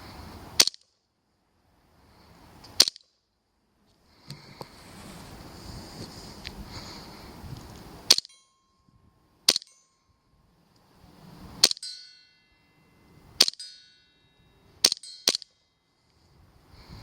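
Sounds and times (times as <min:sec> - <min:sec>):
airsoft gun cracks: 0:00.6 - 0:00.9, 0:02.7 - 0:03.2, 0:08.1 - 0:08.4, 0:09.5 - 0:09.8, 0:11.6 - 0:11.9, 0:13.4 - 0:13.7, 0:14.8 - 0:15.6
metal target ringing: 0:08.1 - 0:10.5, 0:11.6 - 0:15.8.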